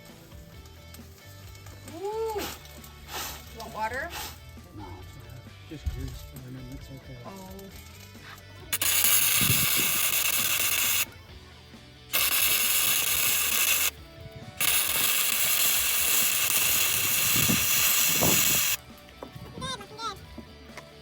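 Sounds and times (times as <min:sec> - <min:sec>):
arc welding hiss: 0:08.7 - 0:11.2, 0:12.1 - 0:18.9.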